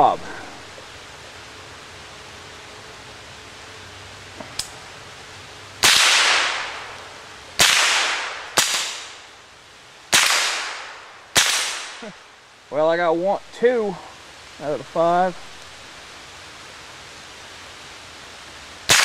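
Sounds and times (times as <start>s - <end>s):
rifle shots ringing out: 10.1s - 12.0s.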